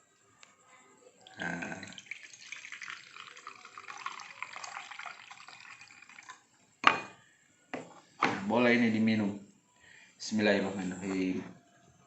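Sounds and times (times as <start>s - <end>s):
liquid pouring into a glass: 1.2s - 6.6s.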